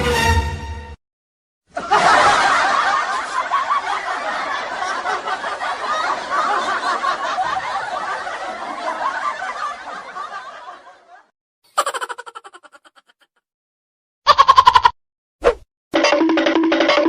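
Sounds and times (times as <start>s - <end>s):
crowd laughing: 1.7s - 13.4s.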